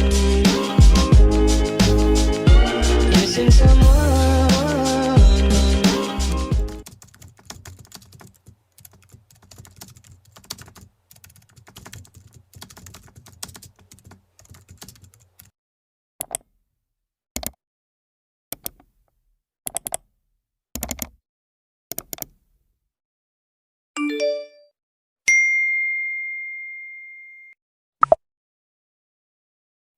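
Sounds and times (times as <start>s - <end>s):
music: 0.0s - 6.8s
keyboard key clicks: 16.2s - 16.5s, 17.4s - 17.6s, 18.6s - 18.9s, 19.7s - 20.0s, 20.8s - 21.2s, 21.9s - 22.4s.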